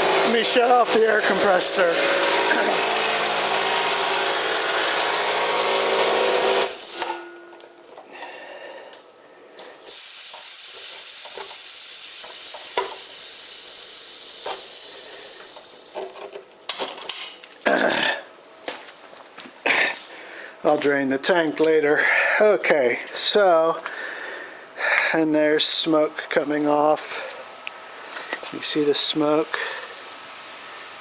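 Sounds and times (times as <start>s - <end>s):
air compressor motor hum: 0.0s - 7.4s, 9.6s - 16.6s
compressed air hissing: 9.8s - 16.4s.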